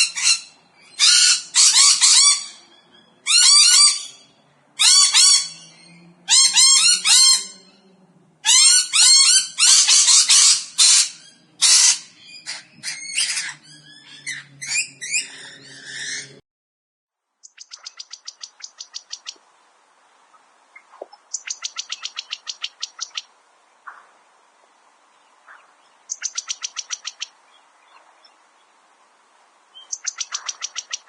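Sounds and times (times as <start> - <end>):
parrots squawking: 0.0 - 7.8, 8.4 - 16.4.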